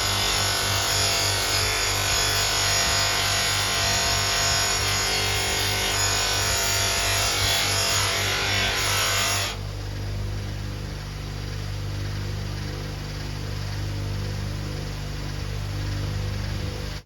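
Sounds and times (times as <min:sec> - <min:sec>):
buffing wheel hissing on metal: 0:00.0 - 0:09.6
bench polishing motor humming: 0:00.0 - 0:17.0.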